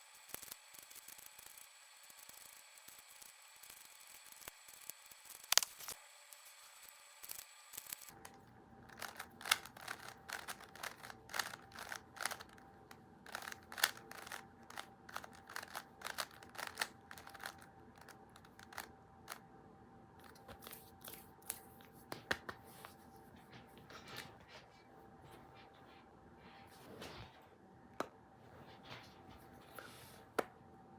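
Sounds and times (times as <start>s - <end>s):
faint steady hum: 0.0s - 30.9s.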